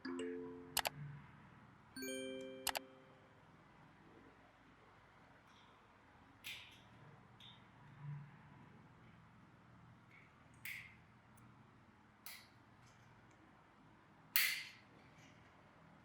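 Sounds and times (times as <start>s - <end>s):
sharp clicks of small hard parts: 6.4s - 7.6s, 10.1s - 11.5s, 12.2s - 13.1s, 14.3s - 15.4s.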